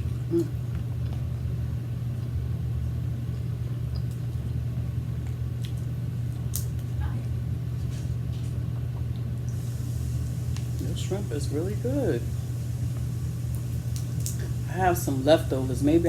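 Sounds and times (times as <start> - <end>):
person chewing: 0.0 - 1.5, 3.2 - 4.5
steady low hum: 0.0 - 16.0.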